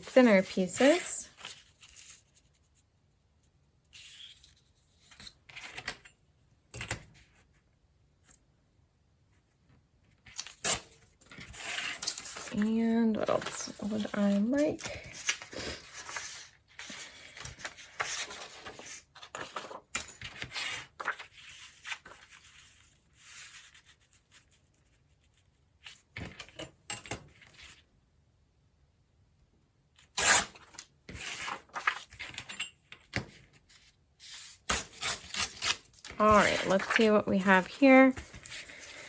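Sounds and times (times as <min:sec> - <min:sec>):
paper rustling and crinkling: 0:00.0 - 0:02.9, 0:10.1 - 0:26.4, 0:30.6 - 0:32.4, 0:33.2 - 0:39.0.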